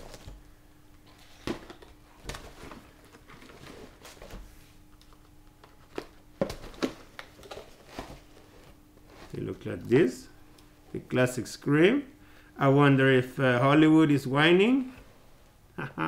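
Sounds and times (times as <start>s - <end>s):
faint steady hum: 0.0s - 16.0s
packaging rustling and clicking: 5.0s - 9.4s.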